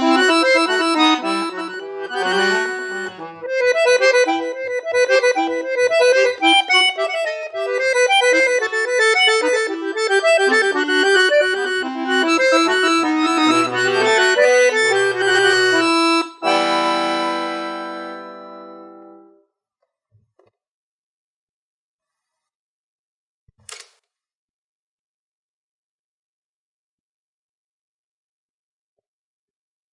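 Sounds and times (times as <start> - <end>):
accordion playing fast melody: 0.0 - 19.2.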